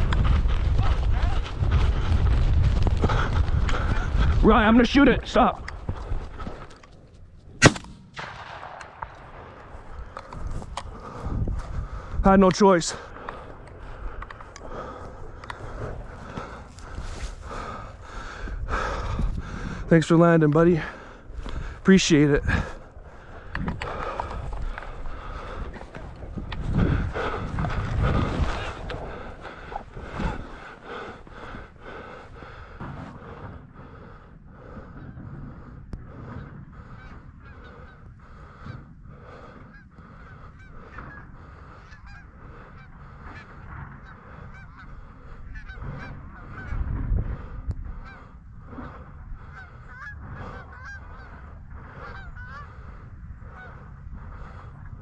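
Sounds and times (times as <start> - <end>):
canada geese honking: 36.9 - 38.1, 39.6 - 46.8, 49.4 - 52.8, 53.5 - 53.9.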